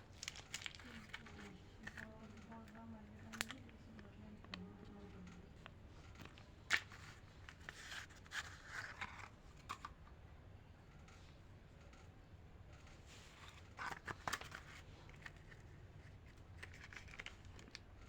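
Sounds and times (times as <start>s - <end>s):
candy wrappers crinkling: 0.0s - 4.7s, 5.6s - 9.3s, 13.6s - 17.9s
wrapper tearing: 0.1s - 1.3s.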